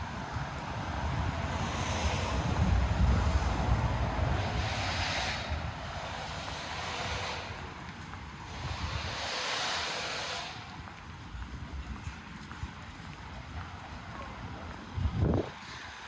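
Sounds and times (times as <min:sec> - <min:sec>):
engine rumble: 0:00.0 - 0:11.0
tyre hiss of passing vehicles: 0:00.0 - 0:11.3, 0:14.8 - 0:16.0.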